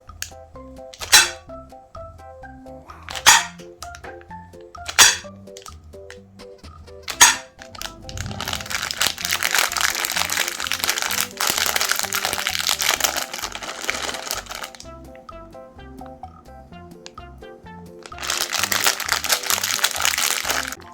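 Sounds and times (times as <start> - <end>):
background music: 0.0 - 20.9
meat grinder crunching candies: 8.6 - 14.9, 18.0 - 20.9.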